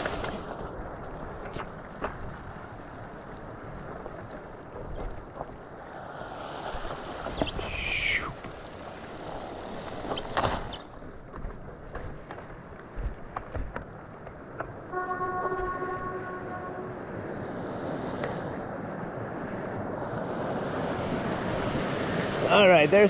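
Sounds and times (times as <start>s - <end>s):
bike tyres rolling on trail: 0.0s - 23.0s.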